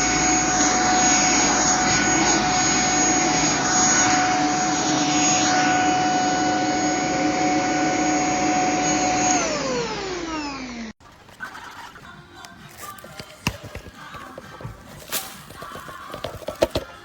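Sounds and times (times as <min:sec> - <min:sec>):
vacuum cleaner whining: 0:00.0 - 0:10.9, 0:12.5 - 0:17.0.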